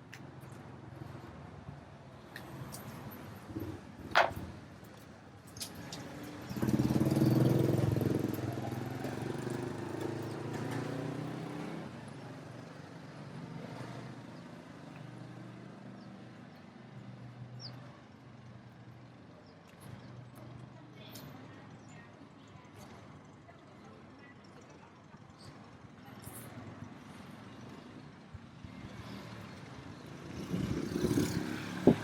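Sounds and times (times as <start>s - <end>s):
street background noise: 0.0s - 32.0s
vehicle engine passing by: 6.0s - 12.0s, 28.6s - 32.0s.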